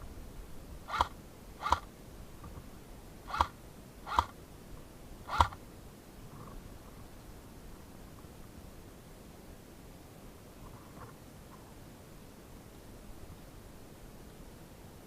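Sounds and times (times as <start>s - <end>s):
airsoft gun shots: 0.9s - 1.9s, 3.3s - 4.4s, 5.3s - 5.6s.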